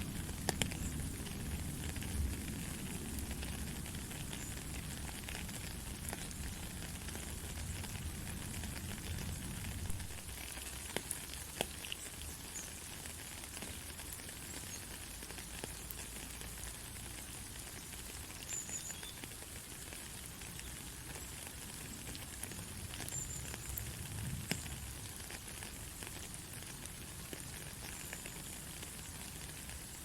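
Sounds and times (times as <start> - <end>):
drip ticks: 0.0 - 2.4, 10.2 - 26.7
rain falling: 0.0 - 30.0.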